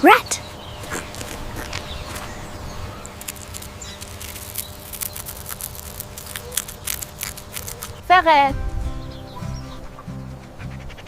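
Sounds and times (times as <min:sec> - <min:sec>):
rat clicking and scratching: 0:03.0 - 0:08.0.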